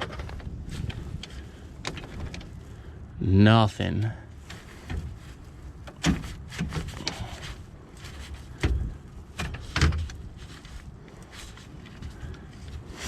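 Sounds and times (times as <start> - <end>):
sharp knocks and clunks: 5.8 - 7.3.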